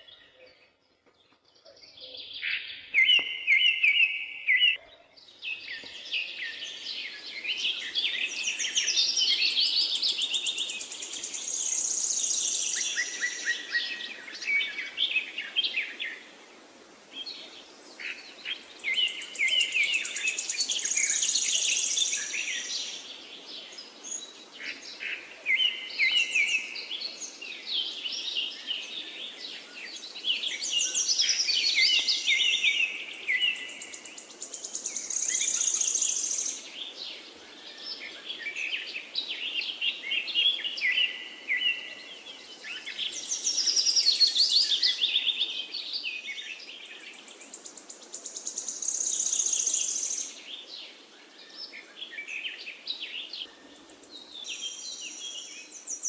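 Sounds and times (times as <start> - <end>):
birds chirping and trilling: 0.0 - 56.0
faint steady hiss: 5.2 - 56.0.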